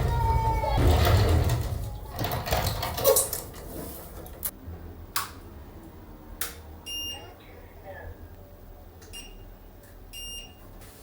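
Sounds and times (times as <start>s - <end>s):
treadmill rumbling across floor: 0.0s - 3.1s.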